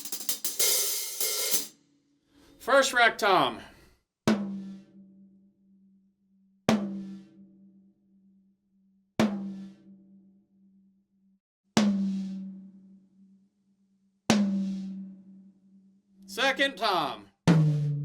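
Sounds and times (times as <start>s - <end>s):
tom drum struck with a stick: 17.5s - 18.0s.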